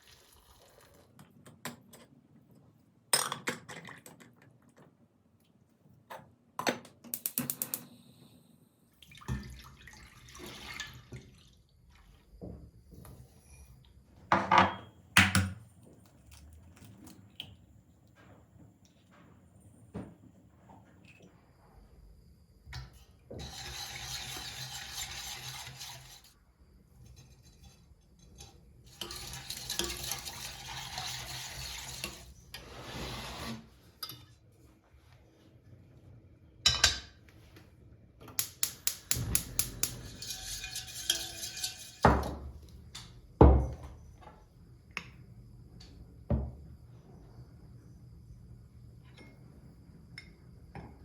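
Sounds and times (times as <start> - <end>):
tap water running: 9.0 - 12.2, 23.3 - 26.3, 28.9 - 32.7
dishes and pans clattering: 38.9 - 42.6.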